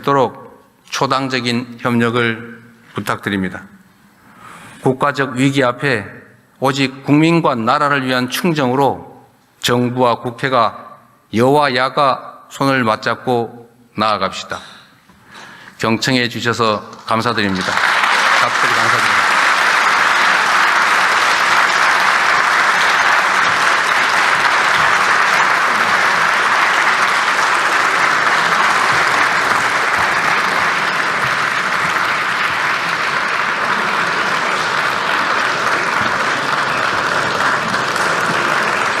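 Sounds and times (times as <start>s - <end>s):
audience applause: 17.4s - 39.0s.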